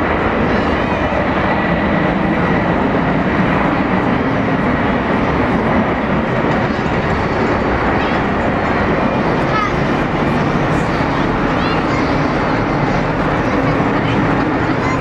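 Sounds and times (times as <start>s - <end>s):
jet engines roaring: 0.0s - 15.0s.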